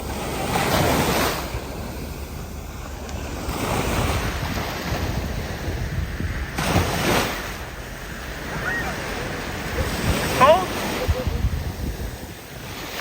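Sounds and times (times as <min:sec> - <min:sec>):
ocean surf washing on beach: 0:00.0 - 0:13.0
wind buffeting microphone: 0:00.0 - 0:13.0.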